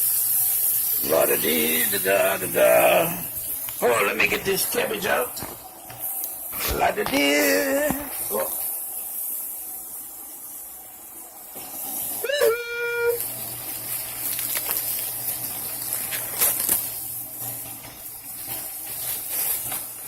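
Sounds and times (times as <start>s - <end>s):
butter frying in a pan: 0.0s - 20.0s
water running: 0.0s - 20.0s.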